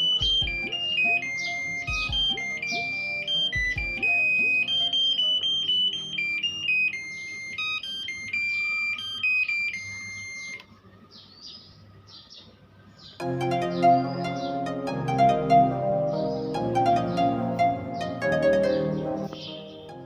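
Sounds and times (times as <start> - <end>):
high electronic beeps tune: 0.0 - 10.6.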